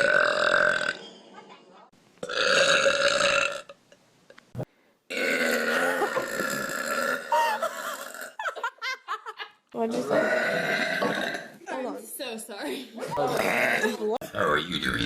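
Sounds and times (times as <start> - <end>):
person burping: 0.0 - 1.2, 2.2 - 3.8, 5.1 - 8.4, 10.0 - 11.6, 13.2 - 15.0.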